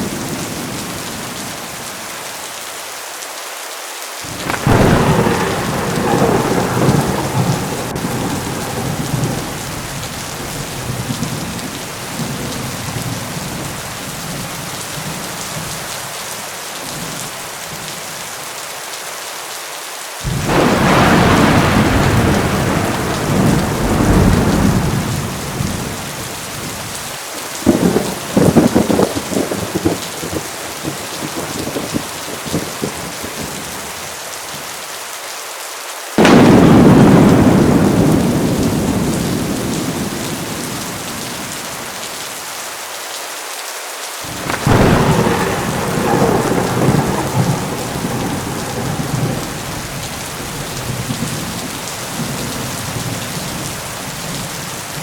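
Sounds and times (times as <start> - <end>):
pouring rain: 0.0 - 55.0
sharp thunder cracks: 4.3 - 13.2, 20.3 - 26.9, 27.6 - 33.0, 36.2 - 41.7, 44.3 - 54.5
thunder rumbling: 4.3 - 15.8, 20.3 - 33.9, 36.2 - 42.2, 44.3 - 55.0.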